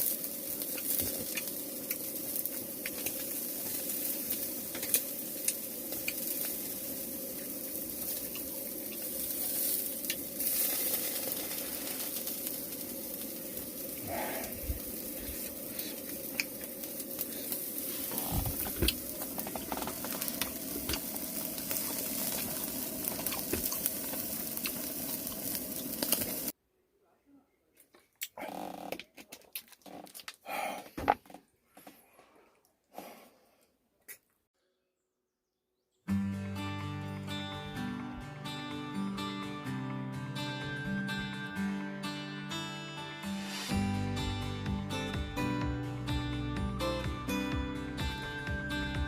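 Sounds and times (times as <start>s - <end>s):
food sizzling in a frying pan: 0.0s - 26.6s.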